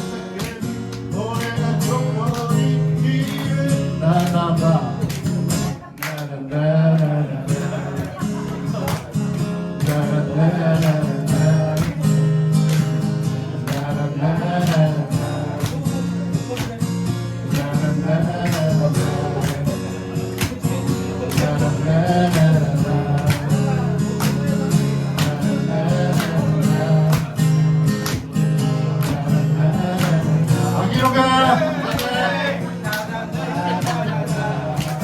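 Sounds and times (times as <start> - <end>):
acoustic guitar strumming: 0.0 - 35.0.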